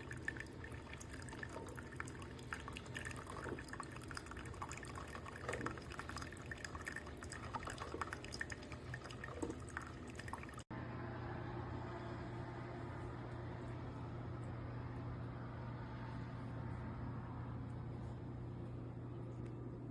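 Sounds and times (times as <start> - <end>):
coffee percolator gurgling: 0.0 - 10.6
steady low hum: 0.0 - 19.9.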